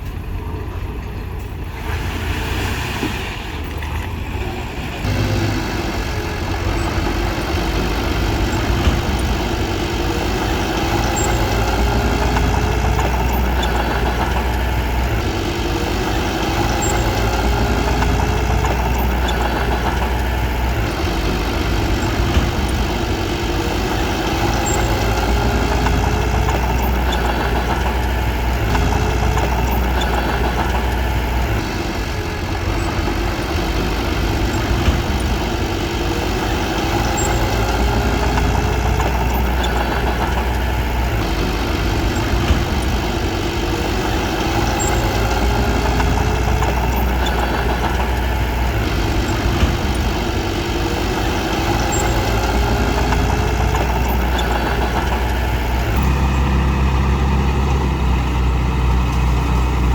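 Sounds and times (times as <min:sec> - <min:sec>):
bulldozer diesel engine running: 0:00.0 - 0:59.9.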